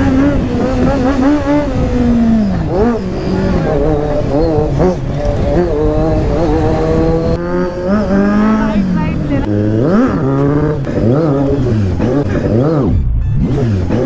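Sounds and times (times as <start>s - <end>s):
motorcycle engine revving: 0.0s - 14.0s.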